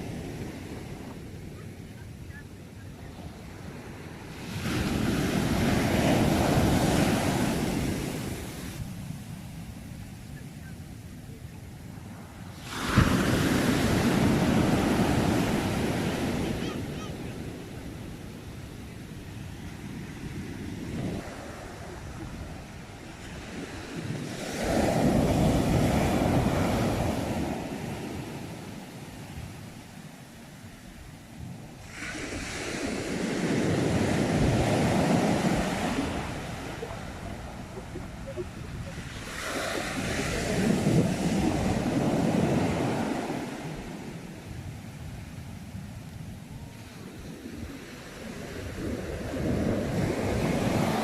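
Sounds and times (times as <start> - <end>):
wind noise on microphone: 3.0 - 51.0
ocean wave breaking: 12.5 - 29.3, 31.7 - 44.3.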